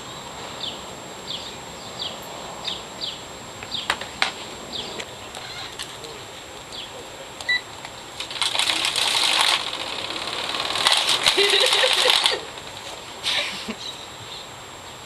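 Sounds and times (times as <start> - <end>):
scattered clicks: 7.4 - 13.0
packaging crinkling and clattering: 8.2 - 13.0.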